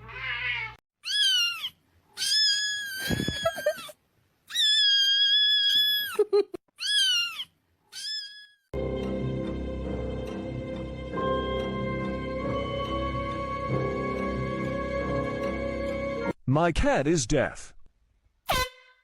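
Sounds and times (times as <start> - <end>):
cat meowing: 0.0 - 3.9, 4.5 - 6.2, 6.8 - 8.6.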